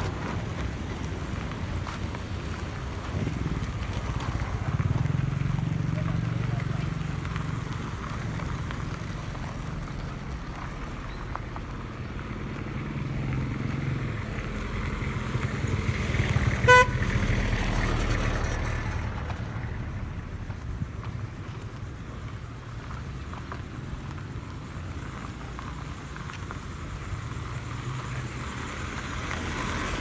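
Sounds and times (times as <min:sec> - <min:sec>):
vehicle engines passing: 0:00.0 - 0:30.0
car horn toot: 0:16.6 - 0:17.2.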